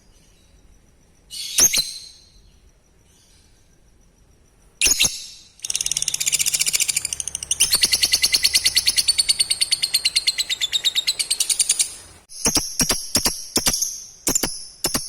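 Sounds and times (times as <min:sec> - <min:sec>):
lovebird chattering trill: 0:01.3 - 0:02.4, 0:04.8 - 0:15.0.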